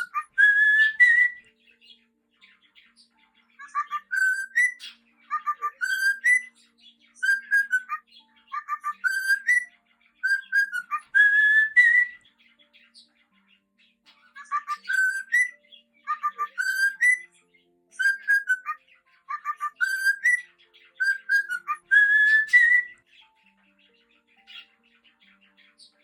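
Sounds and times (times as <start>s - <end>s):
cockatiel whistling: 0.0s - 1.5s, 3.6s - 6.6s, 7.2s - 12.2s, 14.4s - 17.3s, 18.0s - 23.0s.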